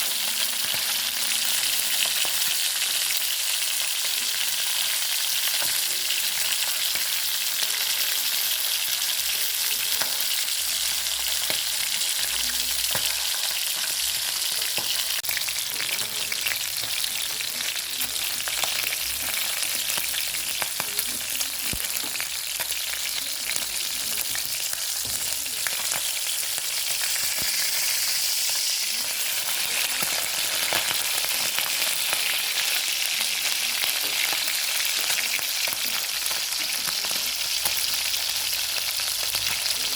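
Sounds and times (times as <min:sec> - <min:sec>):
chicken frying in hot oil: 0:00.0 - 0:39.9.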